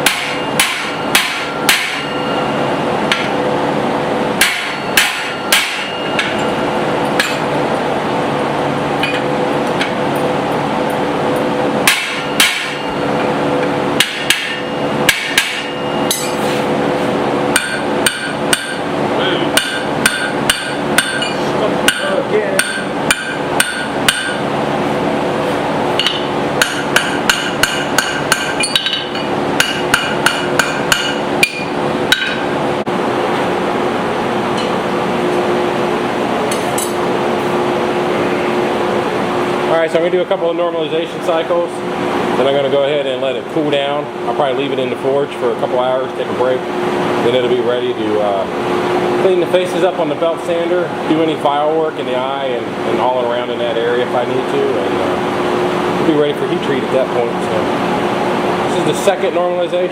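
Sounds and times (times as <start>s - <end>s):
hammer striking steel on anvil: 0.0s - 2.4s, 4.4s - 7.5s, 11.8s - 13.1s, 14.0s - 16.5s, 17.5s - 18.9s, 19.5s - 24.5s, 26.0s - 32.5s, 36.5s - 37.0s.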